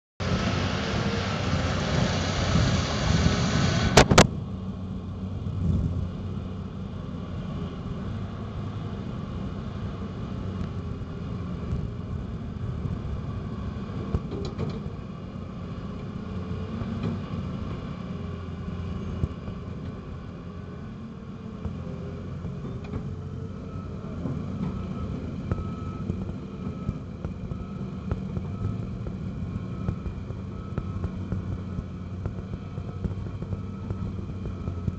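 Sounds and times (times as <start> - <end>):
excavator diesel engine droning: 0.2 - 34.9
thin steady whine: 23.2 - 34.9.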